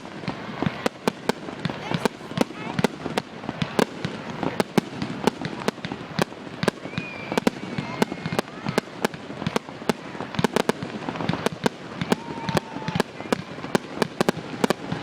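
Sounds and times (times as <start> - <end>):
firework whistling: 0.0 - 15.0
fireworks bangs and crackling: 0.0 - 15.0.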